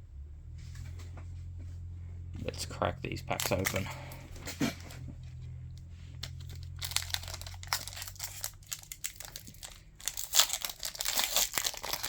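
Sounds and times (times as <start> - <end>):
foil wrapper crinkling and tearing: 3.3 - 4.0, 6.2 - 12.0.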